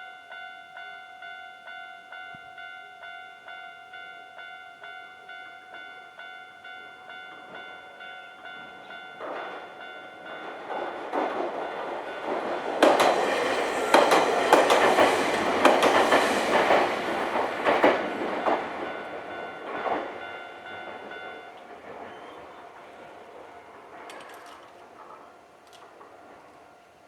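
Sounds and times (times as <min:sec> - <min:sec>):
level crossing warning bell: 0:00.0 - 0:27.0
train wheels clacking over rail joints: 0:08.7 - 0:26.6.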